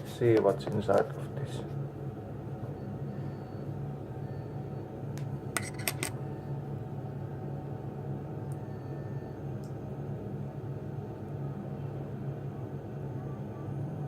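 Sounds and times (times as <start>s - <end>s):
steady low hum: 0.0s - 14.0s
lock cylinder clicks and clinks: 5.6s - 6.2s.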